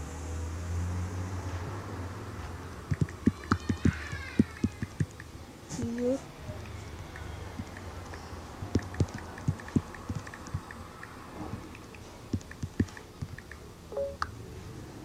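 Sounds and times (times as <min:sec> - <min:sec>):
steady low hum: 0:01.3 - 0:15.0.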